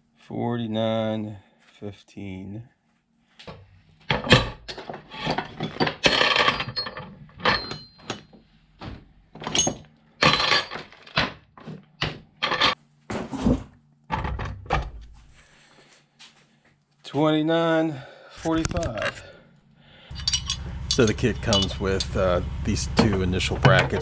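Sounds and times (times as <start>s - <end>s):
metal tools clattering: 4.1s - 8.2s, 9.4s - 11.1s, 12.4s - 12.8s, 20.1s - 24.0s.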